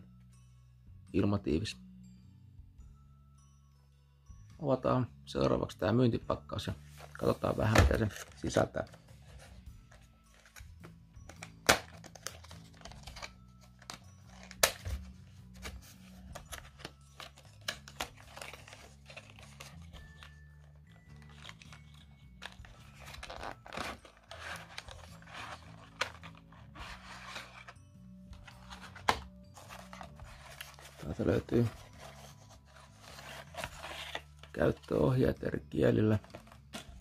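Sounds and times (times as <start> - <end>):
quiet background music: 0.0 - 37.0
packaging rustling and tearing: 11.4 - 20.4, 21.1 - 27.8, 28.4 - 34.9.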